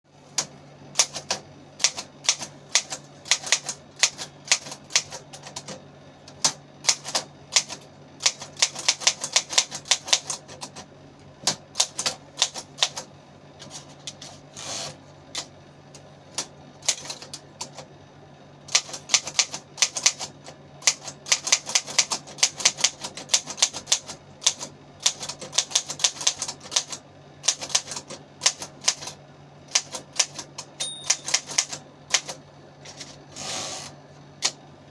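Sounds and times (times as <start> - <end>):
manual typewriter key strikes: 1.0 - 5.8, 6.4 - 10.8, 18.7 - 33.1.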